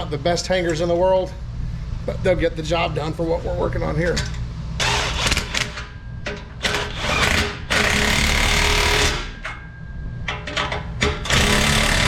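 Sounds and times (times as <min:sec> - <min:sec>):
handheld power tool running: 0:06.6 - 0:09.3, 0:11.2 - 0:12.0.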